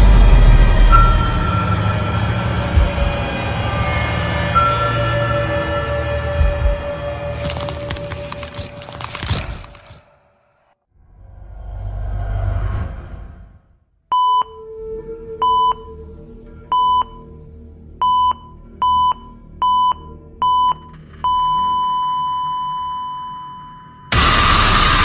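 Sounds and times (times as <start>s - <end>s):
short electronic beeps: 18.0s - 24.2s.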